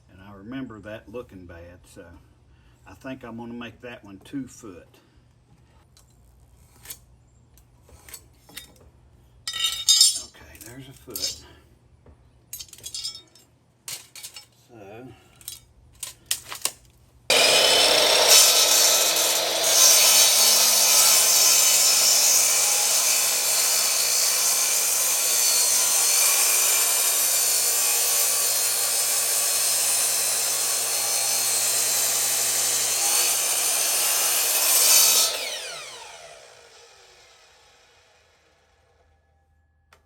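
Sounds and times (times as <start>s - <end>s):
electric saw cutting wood: 17.3s - 39.0s.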